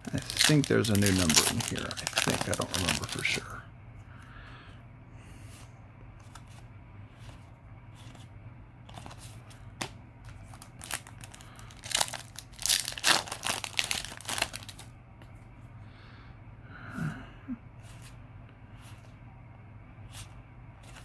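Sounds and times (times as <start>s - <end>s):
foil wrapper crinkling and tearing: 0.0s - 3.4s, 10.3s - 14.9s.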